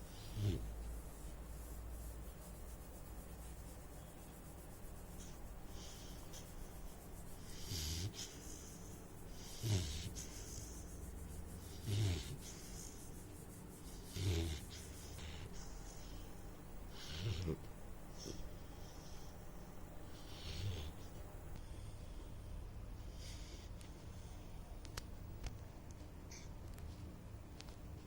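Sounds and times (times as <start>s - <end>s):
puppy snoring: 0.0s - 0.9s, 5.2s - 13.2s, 13.8s - 16.3s, 16.9s - 19.2s, 20.1s - 21.1s.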